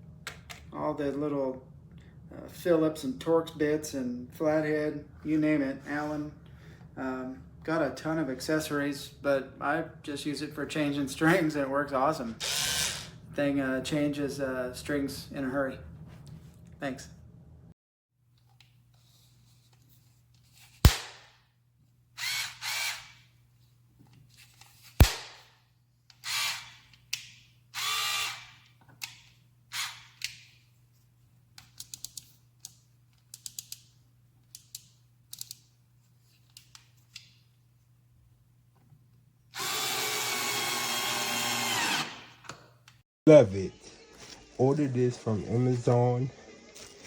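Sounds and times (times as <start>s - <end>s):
electric screwdriver whining: 12.4s - 13.2s, 22.2s - 23.1s, 27.8s - 28.5s, 39.6s - 42.4s.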